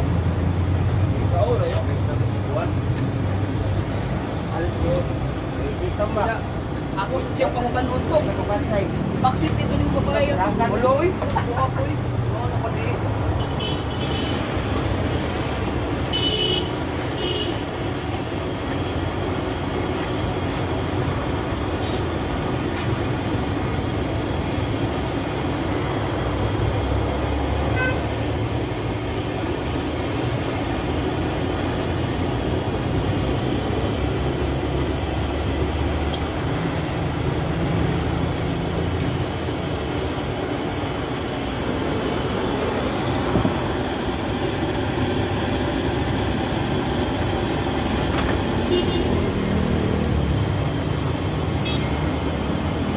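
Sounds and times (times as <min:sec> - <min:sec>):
engine low rumble: 0:00.0 - 0:13.4.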